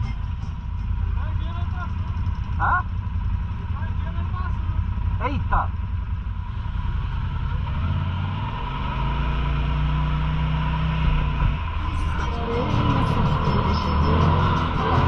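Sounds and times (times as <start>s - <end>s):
utility vehicle engine running: 0.0s - 15.0s.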